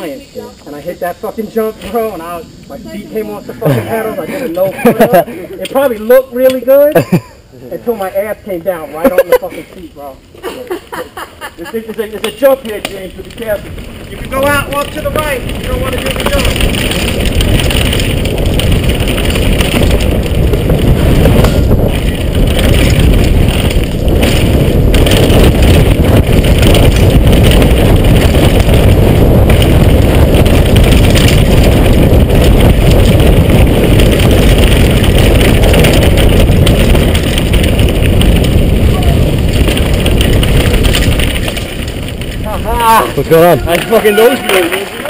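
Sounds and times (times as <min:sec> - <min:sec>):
mountain bike rattle and tyre noise: 0:00.0 - 0:45.0
wind buffeting microphone: 0:11.1 - 0:45.0.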